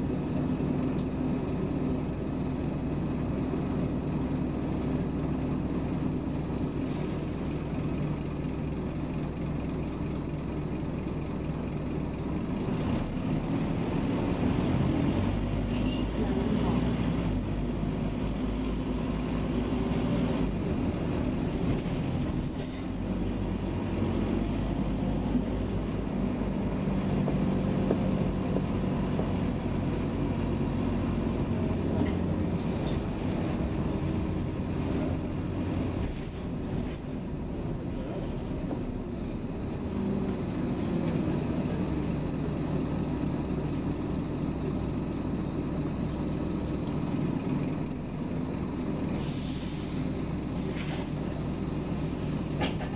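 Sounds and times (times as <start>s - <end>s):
bus engine low drone: 0.0s - 52.9s.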